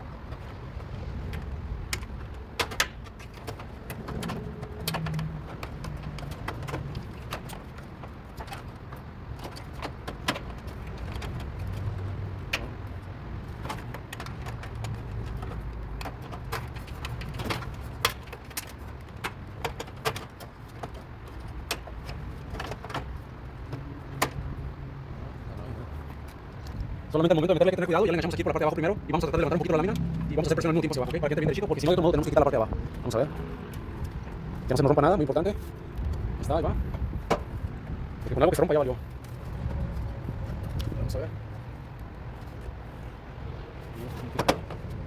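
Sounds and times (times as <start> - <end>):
plastic and metal parts clicking: 1.3 - 24.5.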